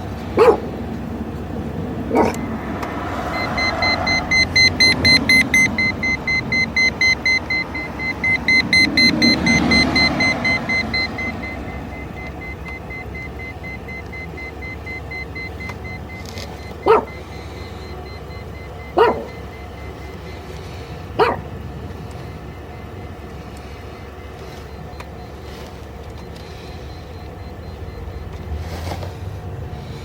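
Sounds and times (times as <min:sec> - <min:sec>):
high pulsing electronic tone: 0:02.2 - 0:15.2.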